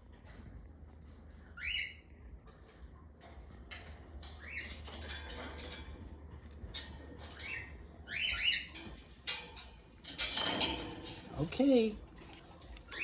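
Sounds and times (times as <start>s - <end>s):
macaw chirping: 7.4s - 8.7s.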